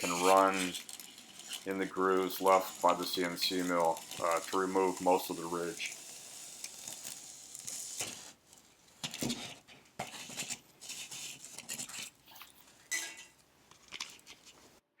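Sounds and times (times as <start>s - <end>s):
hand sanding foam: 0.0s - 7.0s.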